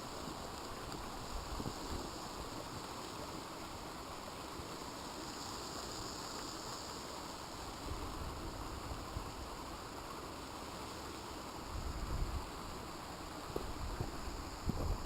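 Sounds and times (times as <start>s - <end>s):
wind rumble on microphone: 11.7s - 12.6s, 13.6s - 15.0s.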